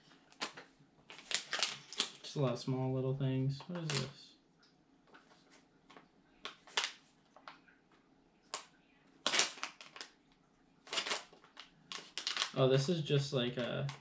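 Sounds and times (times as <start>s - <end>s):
packaging crinkling: 0.1s - 2.4s, 3.7s - 4.2s, 5.1s - 7.6s, 8.5s - 10.2s, 10.8s - 12.6s.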